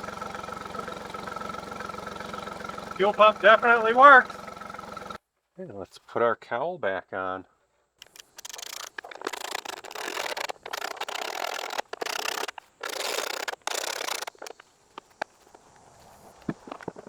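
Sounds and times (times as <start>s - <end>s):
plastic cowl rubbing and scraping: 8.4s - 15.2s.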